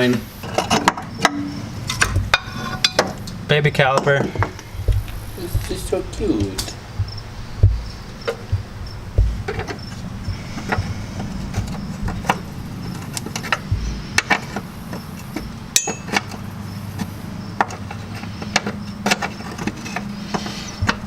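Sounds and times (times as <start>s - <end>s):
hand tools knocking on metal: 0.4s - 16.4s, 17.6s - 21.0s
low hum: 0.4s - 21.0s
ringing metallic clink: 15.8s - 16.2s.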